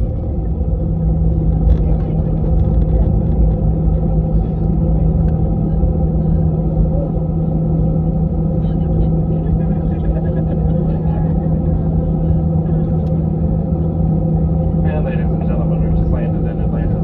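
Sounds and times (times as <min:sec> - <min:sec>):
airliner cabin engine rumble: 0:00.0 - 0:17.0
constant low hum: 0:00.0 - 0:17.0.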